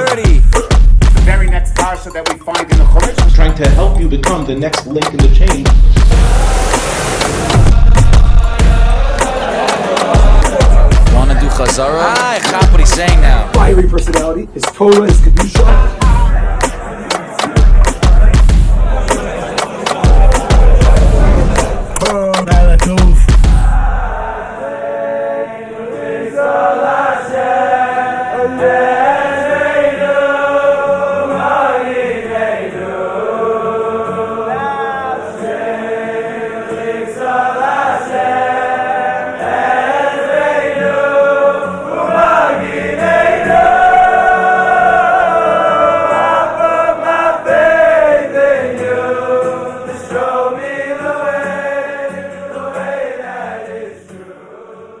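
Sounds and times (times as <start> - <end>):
choir singing slow melody: 6.0 - 11.6, 15.7 - 22.0, 23.5 - 55.0.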